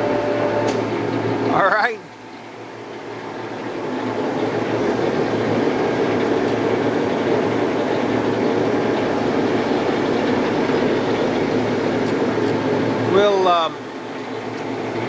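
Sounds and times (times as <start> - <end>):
surface grinder running: 3.5 - 15.0.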